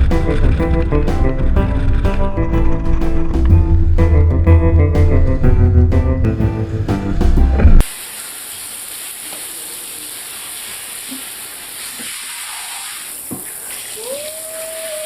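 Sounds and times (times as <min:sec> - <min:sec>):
steady hiss: 0:07.8 - 0:15.0.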